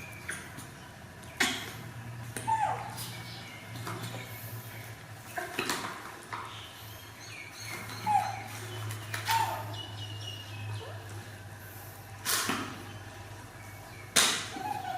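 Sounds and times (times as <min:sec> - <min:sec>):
monkey high cries: 0:02.4 - 0:03.1, 0:07.9 - 0:08.5, 0:09.3 - 0:09.8, 0:14.5 - 0:14.9.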